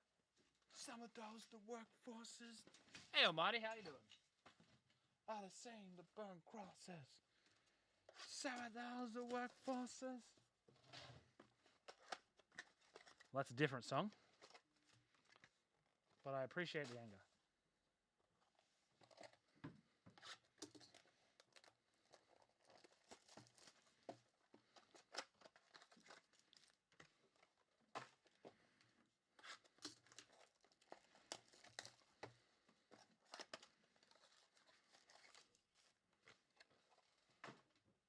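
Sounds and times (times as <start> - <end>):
plastic wrapping crinkling and tearing: 11.8 - 13.3, 20.2 - 28.3, 29.4 - 37.4.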